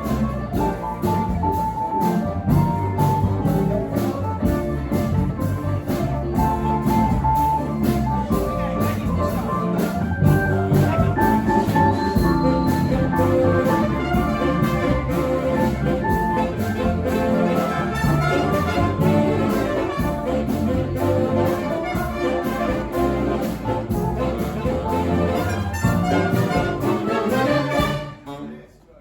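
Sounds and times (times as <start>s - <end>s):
steady drum beat: 0.0s - 28.2s
brass band playing blues: 0.0s - 28.6s.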